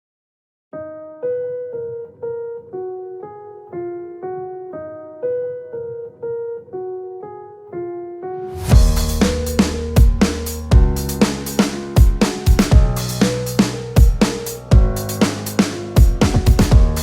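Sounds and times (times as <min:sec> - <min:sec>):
drums and bass: 0:08.6 - 0:17.0
keyboard playing chords: 0:08.7 - 0:17.0.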